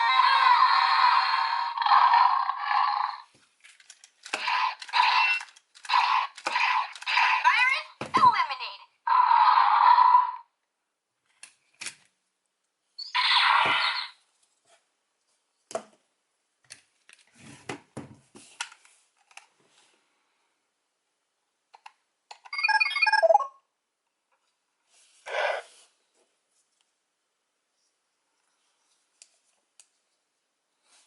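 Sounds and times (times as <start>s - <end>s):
plastic clicking and rattling: 3.6s - 7.1s
toy electronic beeping: 22.5s - 23.6s
electronic sound effect: 22.6s - 23.6s.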